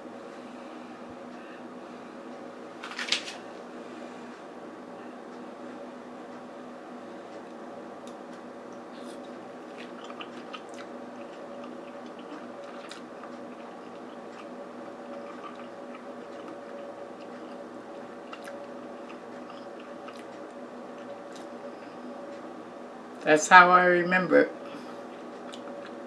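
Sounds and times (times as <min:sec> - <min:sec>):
steady background hum: 0:00.0 - 0:26.0
person chewing food: 0:08.7 - 0:22.0, 0:24.8 - 0:26.0.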